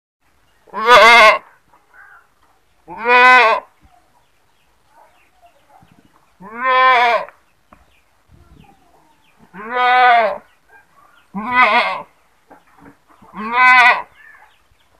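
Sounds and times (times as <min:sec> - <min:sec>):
goat bleating: 0:00.7 - 0:01.4, 0:02.9 - 0:03.7, 0:06.4 - 0:07.3, 0:09.5 - 0:10.4, 0:11.3 - 0:12.1, 0:13.3 - 0:14.3.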